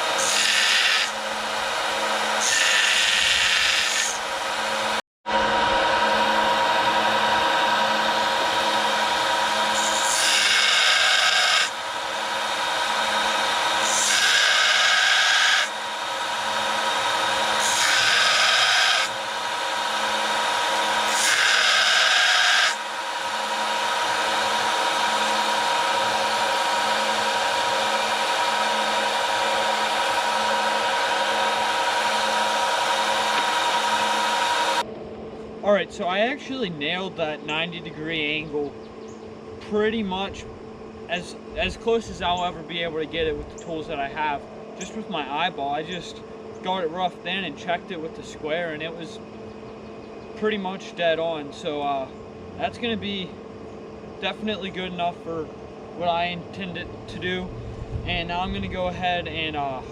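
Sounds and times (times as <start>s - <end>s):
steel chisel grinding: 0.0s - 5.0s, 7.7s - 34.8s
electric grinder running: 0.0s - 34.9s.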